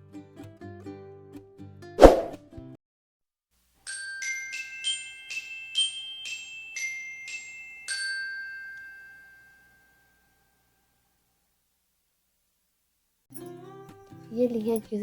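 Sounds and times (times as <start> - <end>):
glockenspiel-like jingle: 3.9 - 10.7, 13.3 - 15.0.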